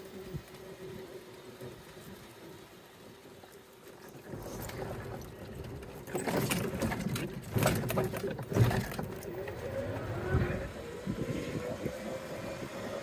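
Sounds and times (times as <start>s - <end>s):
cart rattling over rough ground: 0.0s - 13.0s
electric golf cart motor whine: 9.3s - 13.0s.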